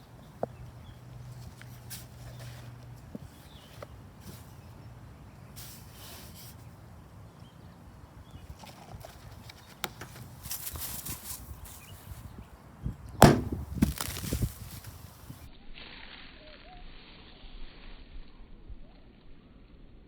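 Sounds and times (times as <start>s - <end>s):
light knocks: 13.2s - 14.0s
cap popping off cup: 13.2s - 14.1s.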